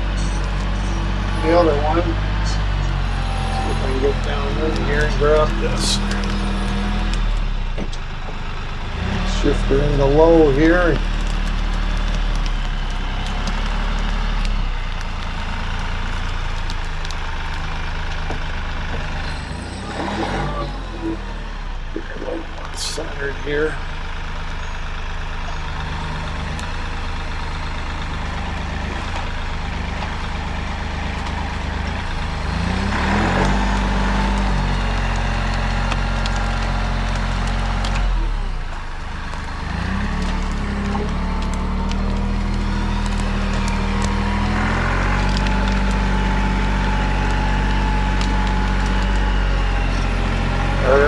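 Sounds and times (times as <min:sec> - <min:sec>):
wood and branches cracking: 0:00.0 - 0:50.9
tractor engine under load: 0:00.0 - 0:51.0.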